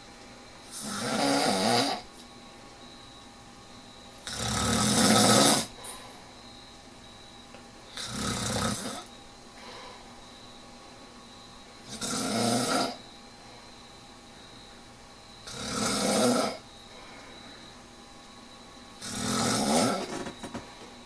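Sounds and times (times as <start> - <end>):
man snoring: 0.7 - 2.1, 4.2 - 5.8, 7.9 - 9.1, 11.9 - 13.0, 15.4 - 16.6, 19.0 - 20.2.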